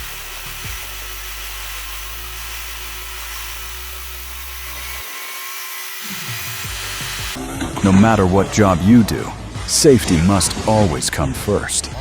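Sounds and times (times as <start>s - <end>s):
power blade grinding through material: 0.0s - 7.4s.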